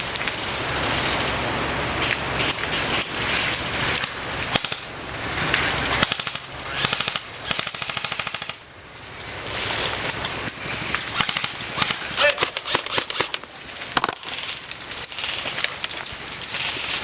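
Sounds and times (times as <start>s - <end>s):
steady hiss: 0.0s - 17.0s
airsoft guns firing bursts: 6.0s - 8.6s, 10.6s - 14.4s.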